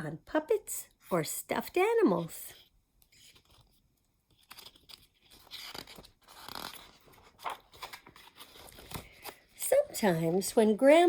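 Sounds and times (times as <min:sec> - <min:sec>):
paper pages rustling: 0:03.0 - 0:10.5.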